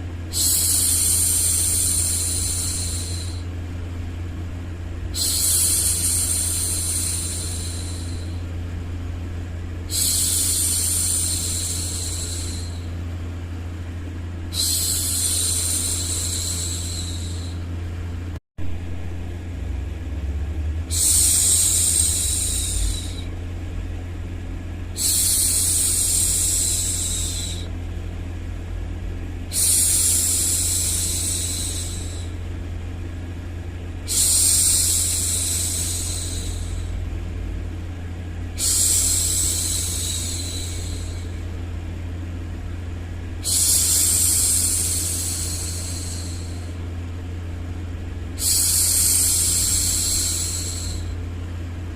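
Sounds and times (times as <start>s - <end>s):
white noise hum: 0.0s - 51.9s
woman shushing: 14.5s - 17.6s, 20.9s - 23.3s, 25.0s - 27.7s, 29.5s - 32.4s, 38.6s - 41.4s, 43.4s - 46.8s.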